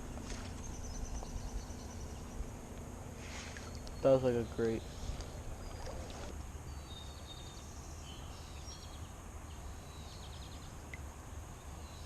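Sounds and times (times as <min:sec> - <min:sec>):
low outdoor rumble: 0:00.0 - 0:12.0
bird singing high trills: 0:00.4 - 0:02.6, 0:03.5 - 0:10.8.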